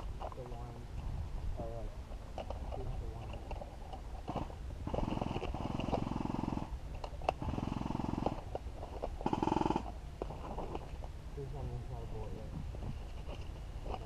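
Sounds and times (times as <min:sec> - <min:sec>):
airsoft rifle full auto bursts: 0:09.2 - 0:09.9.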